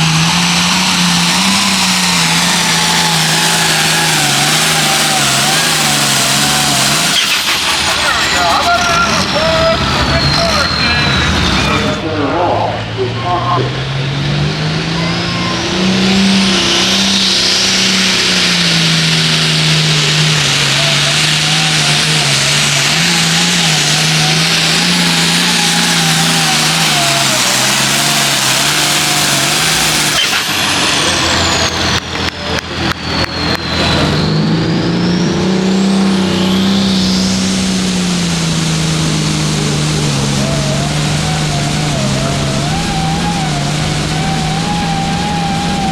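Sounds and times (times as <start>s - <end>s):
diesel tractor engine under load: 0.0s - 45.9s
high whistle: 0.3s - 12.0s, 20.7s - 38.0s, 40.3s - 45.9s.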